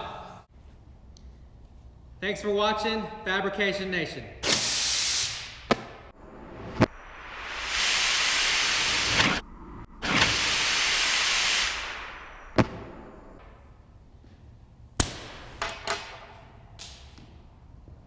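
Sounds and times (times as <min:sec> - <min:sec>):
air blow gun hissing bursts: 0:04.4 - 0:05.7, 0:07.4 - 0:09.4, 0:10.0 - 0:12.1
sharp crack: 0:05.3 - 0:07.0, 0:07.6 - 0:13.7, 0:15.0 - 0:17.3.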